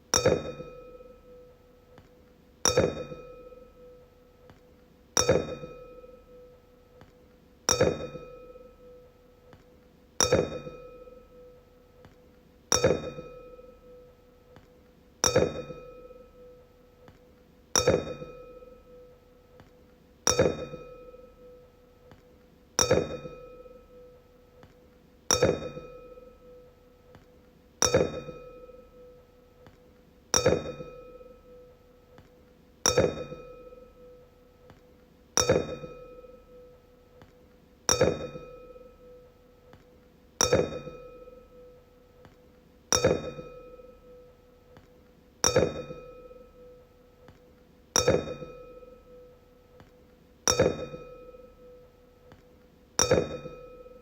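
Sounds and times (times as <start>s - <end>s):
wine glass clinking and ringing: 10.2s - 11.2s, 40.4s - 41.6s, 43.0s - 44.1s, 45.4s - 46.5s, 48.0s - 49.0s, 50.5s - 51.8s.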